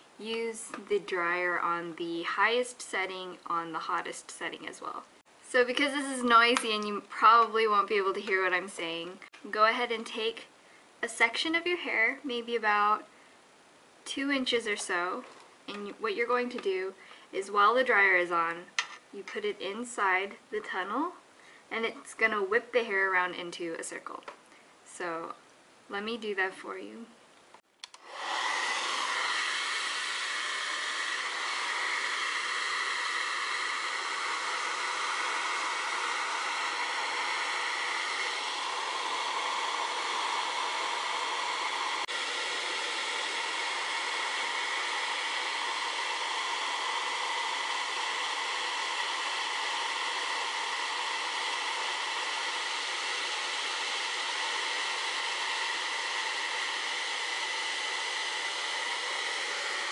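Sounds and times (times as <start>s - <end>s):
hair dryer running: 27.8s - 59.9s.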